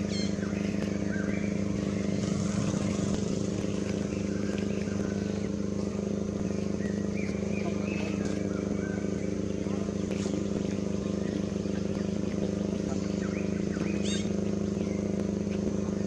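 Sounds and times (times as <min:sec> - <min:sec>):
short high chirping calls: 0:00.0 - 0:00.6, 0:13.2 - 0:14.4
low motor hum: 0:00.0 - 0:16.0.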